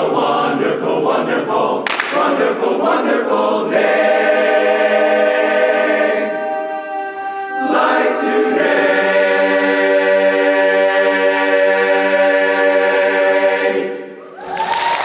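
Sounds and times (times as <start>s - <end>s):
barbershop chorus singing a cappella: 0.0s - 14.2s.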